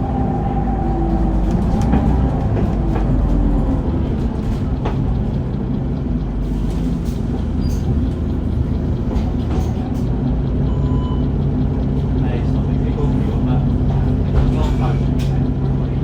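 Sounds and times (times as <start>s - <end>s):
bus engine running: 0.0s - 16.0s.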